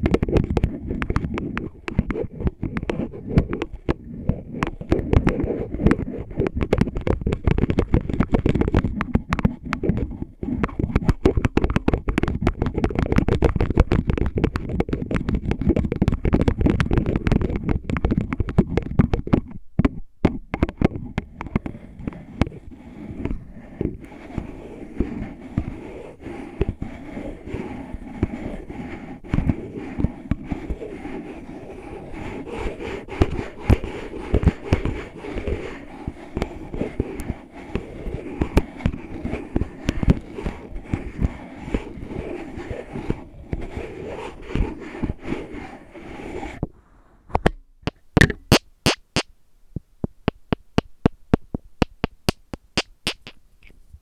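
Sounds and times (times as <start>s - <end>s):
scratching at a bottle: 0.0s - 46.8s, 47.4s - 49.3s, 50.0s - 53.8s
sharp taps: 47.3s - 53.4s.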